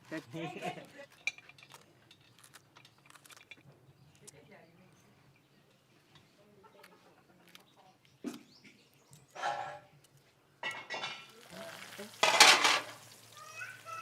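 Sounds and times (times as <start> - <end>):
utensils scraping and clattering: 1.0 - 3.6, 9.2 - 9.9, 12.2 - 13.0.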